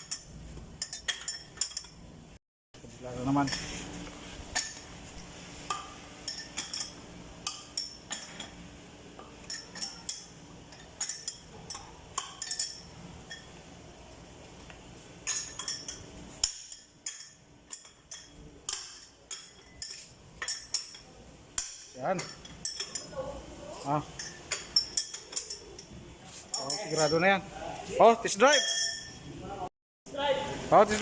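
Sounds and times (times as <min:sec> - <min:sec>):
metal tools clinking on metal: 0:00.0 - 0:02.0, 0:09.4 - 0:13.6, 0:15.2 - 0:23.1, 0:23.8 - 0:25.9, 0:26.5 - 0:27.4, 0:28.3 - 0:29.2.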